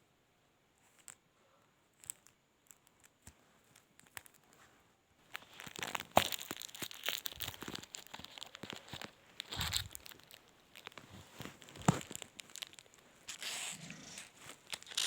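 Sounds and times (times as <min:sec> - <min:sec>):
packaging crinkling and tearing: 0:05.2 - 0:15.0.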